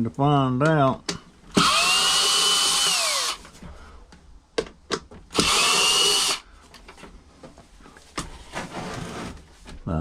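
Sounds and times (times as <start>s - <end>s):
screw gun motor whine: 1.6s - 3.4s, 5.4s - 6.4s.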